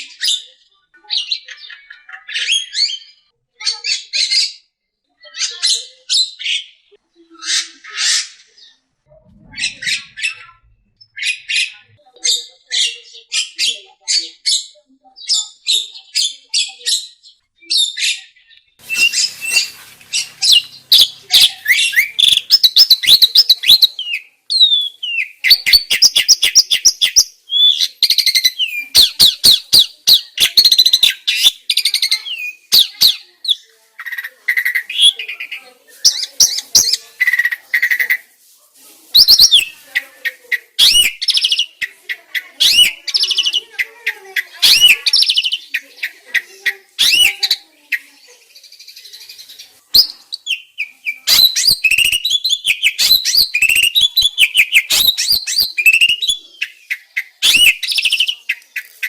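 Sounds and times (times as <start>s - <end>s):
songbird singing: 14.5s - 38.2s, 39.2s - 59.0s.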